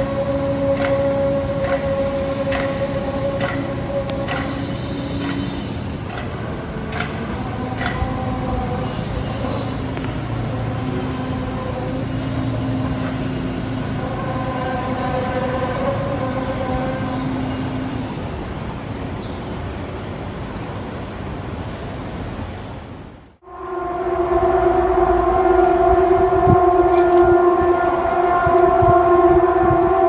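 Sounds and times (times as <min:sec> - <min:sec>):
droning groan of held tones: 0:00.0 - 0:18.7, 0:23.4 - 0:30.0
rumbling noise: 0:23.4 - 0:30.0.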